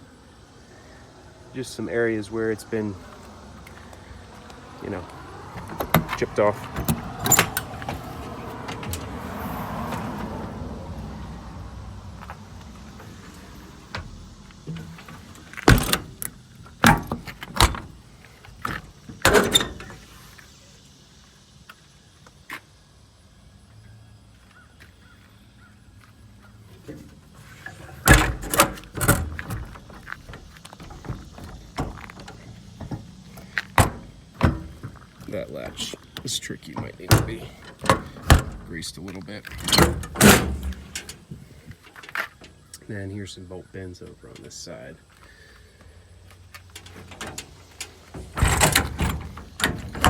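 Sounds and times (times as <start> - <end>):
metal door clanking: 4.9 - 10.4, 12.2 - 20.2, 26.8 - 42.6, 46.8 - 50.0.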